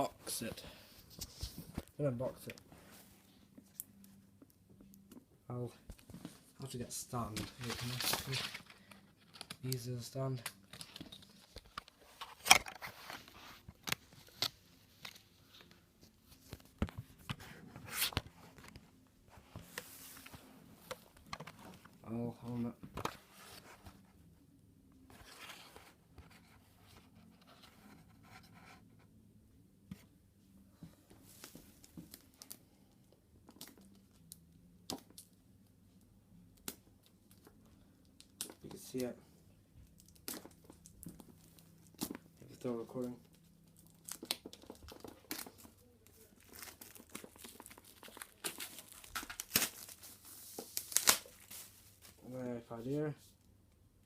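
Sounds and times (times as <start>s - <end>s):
packaging crinkling and rustling: 7.2s - 9.8s, 39.9s - 52.3s
packaging scraping and rustling: 7.3s - 9.8s.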